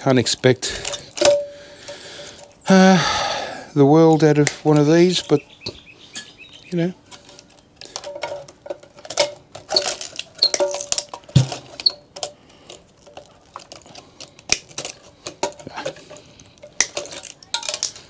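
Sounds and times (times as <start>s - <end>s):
metal parts and tools clinking: 0.7s - 2.6s, 7.1s - 18.0s.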